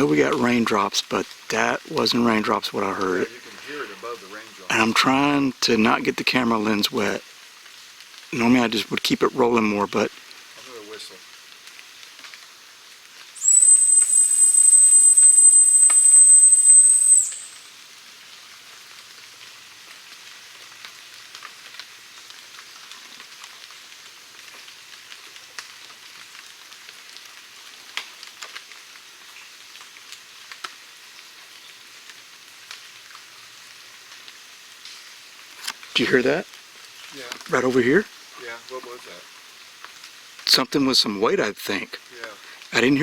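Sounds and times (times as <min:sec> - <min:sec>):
rain pattering on vegetation: 0:00.0 - 0:43.0
high whistle note: 0:13.4 - 0:17.7.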